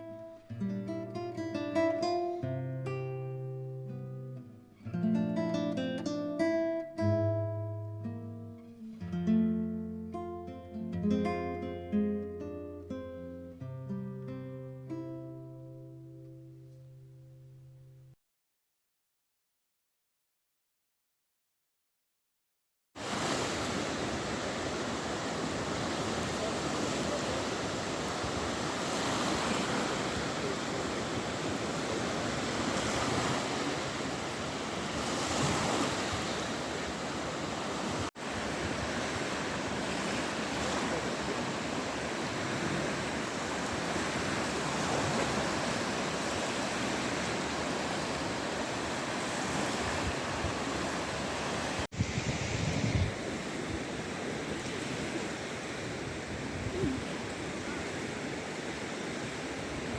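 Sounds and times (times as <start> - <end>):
sea waves washing onto shore: 23.0 - 59.9.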